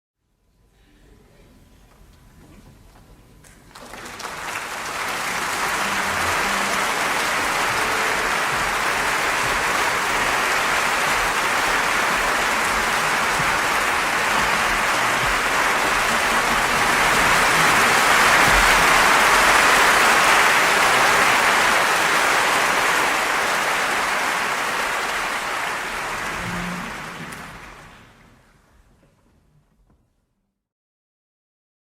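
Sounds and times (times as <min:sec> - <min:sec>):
crowd applause: 0:03.7 - 0:28.5.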